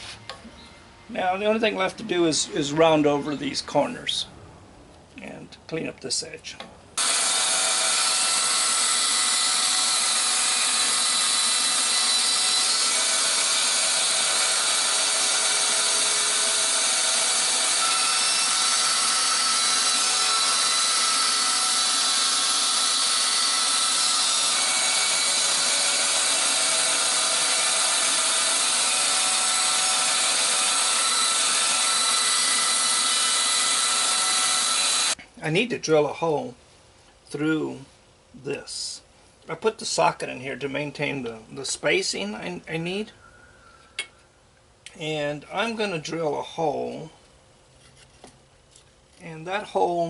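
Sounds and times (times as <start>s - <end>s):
woodworking power tool running: 7.0s - 35.2s.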